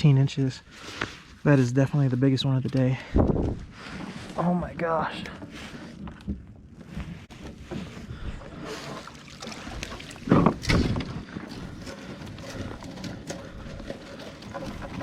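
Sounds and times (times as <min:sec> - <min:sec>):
knocks and clatter of gear: 0:10.2 - 0:15.0
thump and rustle: 0:10.3 - 0:11.2.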